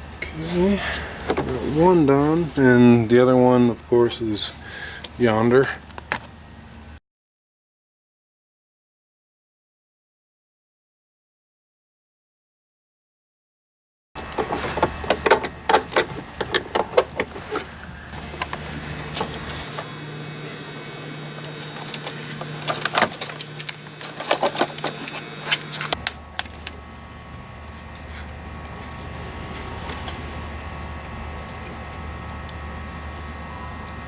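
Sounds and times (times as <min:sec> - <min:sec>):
steady low hum: 0:00.0 - 0:07.0, 0:14.2 - 0:34.0
hand tools clicking on metal: 0:14.2 - 0:19.9, 0:21.3 - 0:26.8.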